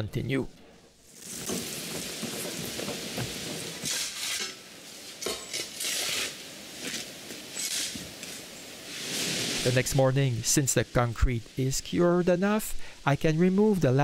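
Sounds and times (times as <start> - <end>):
steady hiss: 0.3 - 14.0
hand tool scraping ground: 1.1 - 10.0.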